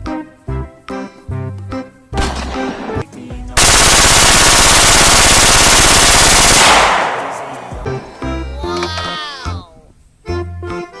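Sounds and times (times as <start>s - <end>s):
rapid machine-gun fire: 3.6s - 8.0s.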